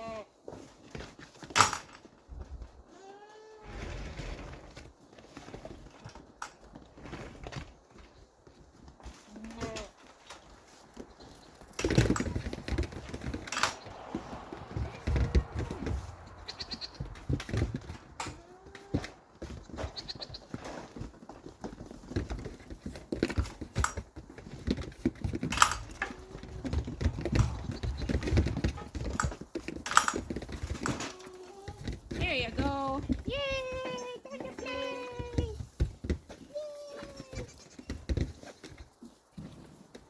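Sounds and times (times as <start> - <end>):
livestock bleating: 0.0 - 0.3, 2.9 - 3.7
rustling: 3.6 - 40.0
knocks and thuds: 11.7 - 18.4.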